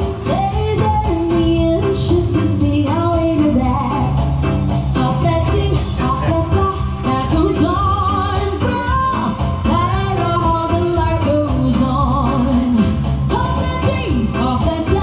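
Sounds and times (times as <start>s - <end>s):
bass: 0.0s - 15.0s
guitar: 0.0s - 15.0s
steady beat: 0.0s - 15.0s
person singing: 5.0s - 15.0s.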